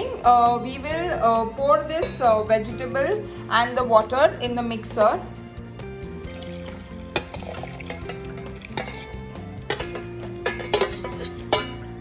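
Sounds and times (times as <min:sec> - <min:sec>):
background music with held notes: 0:00.0 - 0:12.0
metal utensils clinking: 0:01.9 - 0:02.6, 0:06.1 - 0:12.0.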